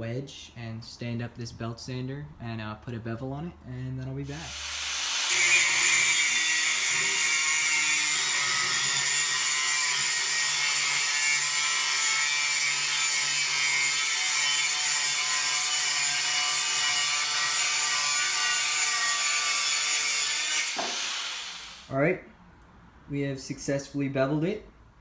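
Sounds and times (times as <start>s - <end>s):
belt sander grinding knife blade: 4.3s - 21.9s.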